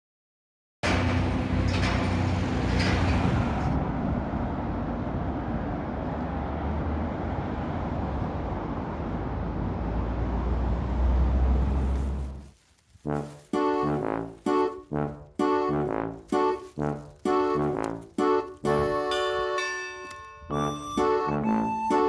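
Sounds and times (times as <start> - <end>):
vehicle engine: 0.8 - 12.6
road traffic rumble: 0.8 - 22.0.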